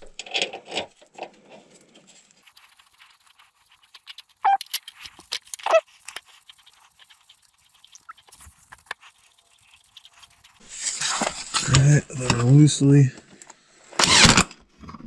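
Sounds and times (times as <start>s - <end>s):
short high squeals: 4.4s - 4.6s, 5.6s - 5.9s.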